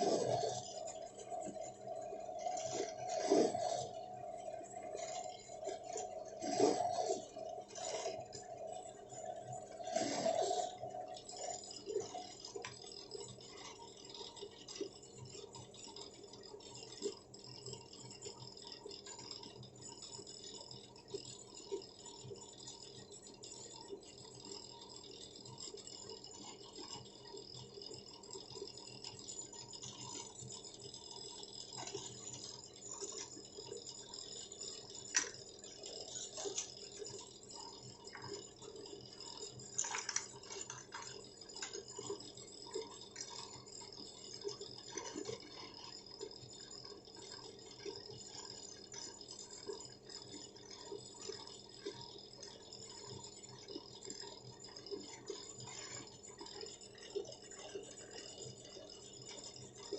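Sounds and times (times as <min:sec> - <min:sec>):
low steady hum: 0:00.0 - 0:51.6
small clicks and taps: 0:34.8 - 0:53.2.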